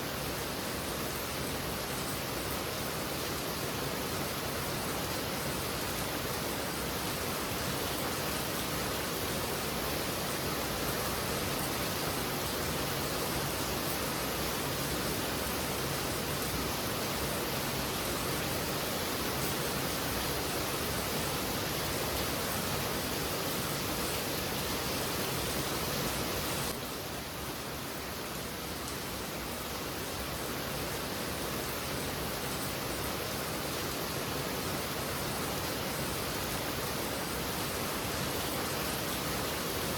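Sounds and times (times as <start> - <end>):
heavy rain hissing: 6.1 - 32.2.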